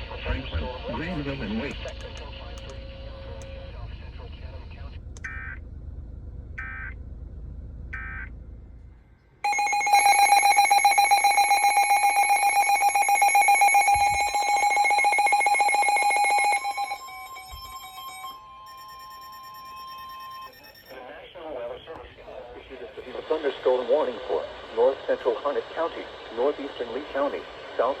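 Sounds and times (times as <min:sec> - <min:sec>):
digital data tone bursts: 0:09.5 - 0:21.0
loud two-tone attention signal: 0:09.5 - 0:21.0.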